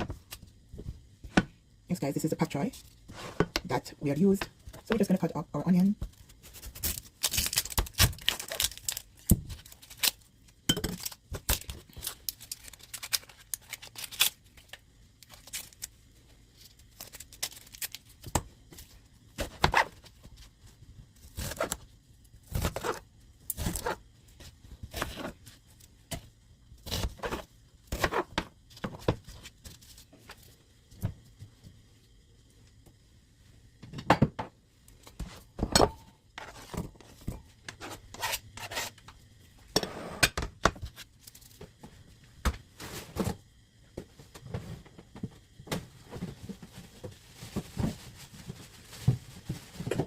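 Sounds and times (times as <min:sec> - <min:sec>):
knife slicing onion: 0:21.3 - 0:21.8, 0:22.4 - 0:24.0, 0:37.7 - 0:39.0.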